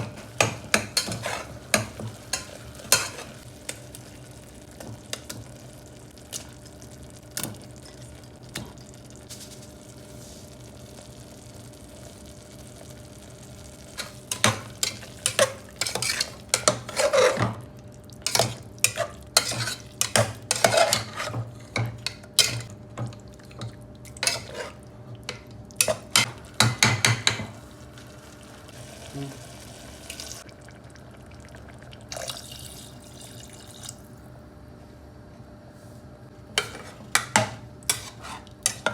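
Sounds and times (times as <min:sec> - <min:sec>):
food sizzling in a pan: 0:00.0 - 0:31.7, 0:36.6 - 0:38.9
spatula scraping a pan: 0:00.4 - 0:03.5, 0:14.0 - 0:17.6, 0:18.2 - 0:22.7, 0:24.1 - 0:24.8, 0:36.6 - 0:38.9.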